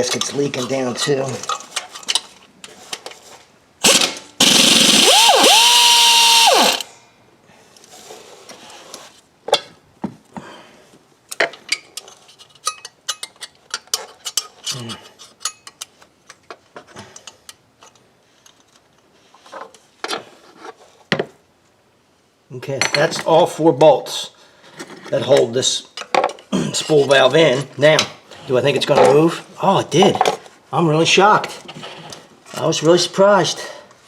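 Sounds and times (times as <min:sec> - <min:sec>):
power tool motor whine: 0:04.4 - 0:06.9.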